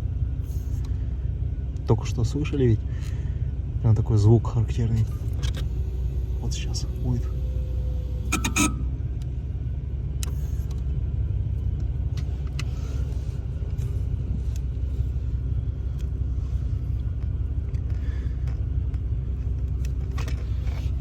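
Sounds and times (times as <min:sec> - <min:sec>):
car engine idling: 0:00.0 - 0:21.0
brake pedal creaks: 0:08.3 - 0:08.9.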